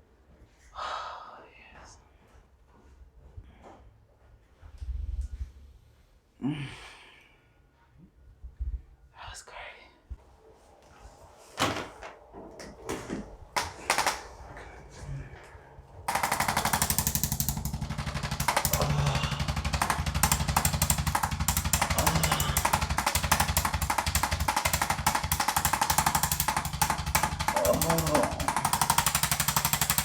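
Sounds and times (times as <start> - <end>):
scattered knocks: 11.6 - 14.3, 16.1 - 30.0
low motor hum: 12.0 - 30.0
motor-driven hammering device: 16.1 - 30.0.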